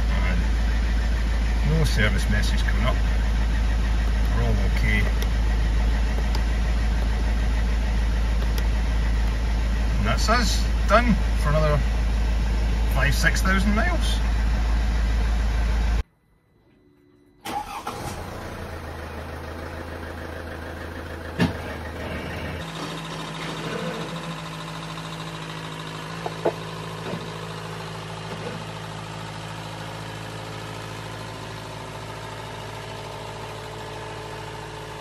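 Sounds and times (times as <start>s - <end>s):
diesel engine starting and idling: 0.0s - 16.1s, 17.4s - 35.0s.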